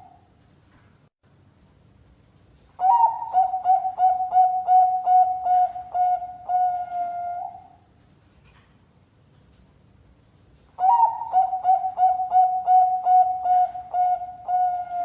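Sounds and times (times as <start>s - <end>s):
dove cooing: 2.8s - 7.8s, 10.8s - 15.0s.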